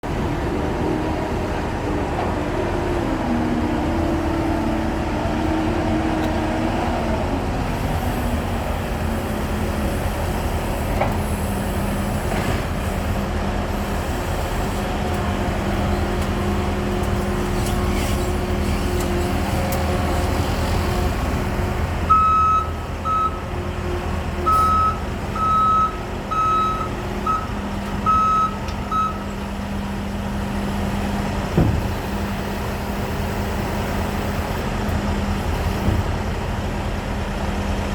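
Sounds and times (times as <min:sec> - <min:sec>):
diesel engine running: 0:00.0 - 0:37.9
backup alarm beeps: 0:22.1 - 0:23.4, 0:24.5 - 0:29.3.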